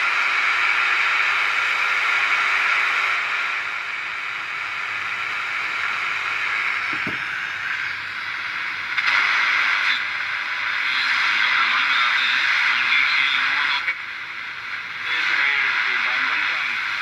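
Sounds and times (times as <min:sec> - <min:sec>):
radio static hiss: 0:05.0 - 0:17.0.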